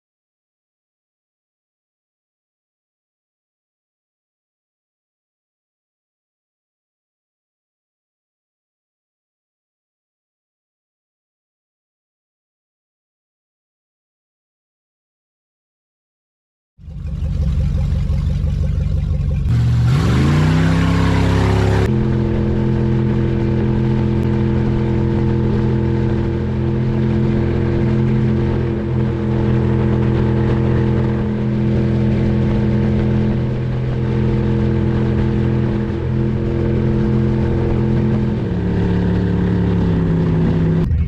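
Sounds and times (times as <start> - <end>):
boat engine running: 16.8 - 41.0.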